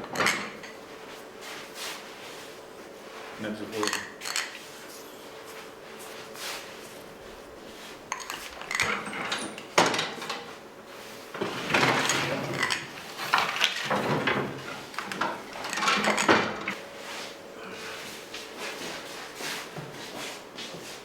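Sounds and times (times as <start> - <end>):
metal trays clattering and scraping: 11.2 - 16.8.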